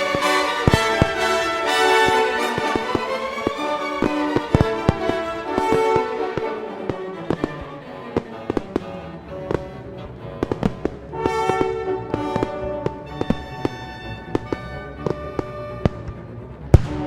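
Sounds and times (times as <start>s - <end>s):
bowed string music: 0.0s - 17.0s.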